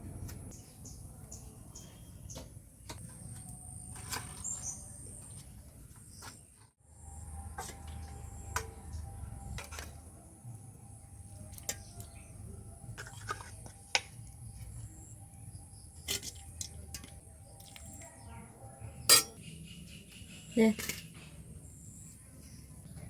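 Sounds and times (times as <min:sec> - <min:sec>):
low steady rumble: 0:00.0 - 0:00.5
kitchen utensils clinking: 0:19.0 - 0:19.4.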